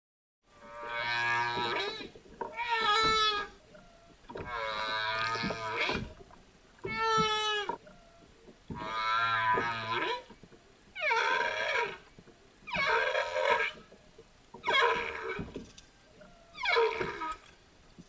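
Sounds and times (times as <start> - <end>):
pitched animal calls: 0.7 - 6.1, 6.8 - 10.3, 11.0 - 12.1, 12.7 - 13.9, 14.6 - 15.5, 16.1 - 17.5.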